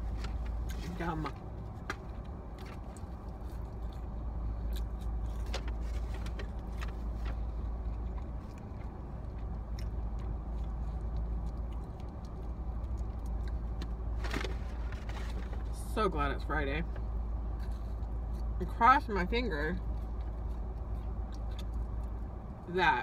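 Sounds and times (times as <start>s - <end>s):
car engine hum from cabin: 0.0s - 23.0s
rustles: 14.1s - 15.8s.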